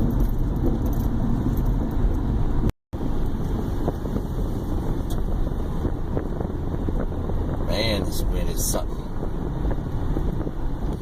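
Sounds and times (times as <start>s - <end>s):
car driving rumble: 0.0s - 11.0s.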